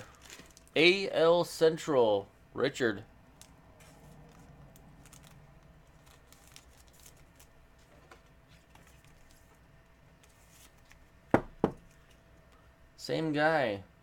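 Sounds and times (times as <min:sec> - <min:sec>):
trading cards rustling: 0:00.0 - 0:00.8, 0:03.3 - 0:09.6, 0:10.2 - 0:11.1.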